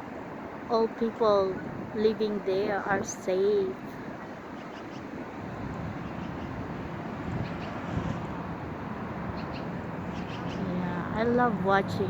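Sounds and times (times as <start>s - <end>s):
low rumble with hiss: 5.6s - 12.0s.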